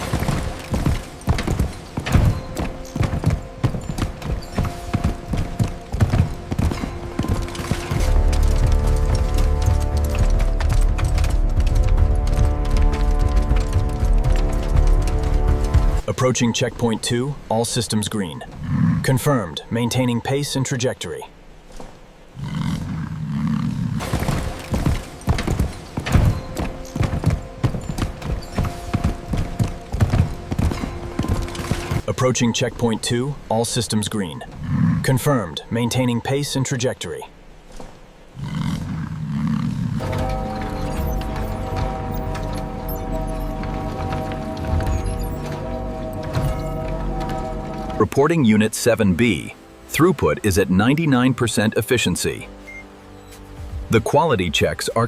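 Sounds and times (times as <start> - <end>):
cattle hooves clopping: 0.0 - 16.1, 24.0 - 32.2, 37.7 - 48.4.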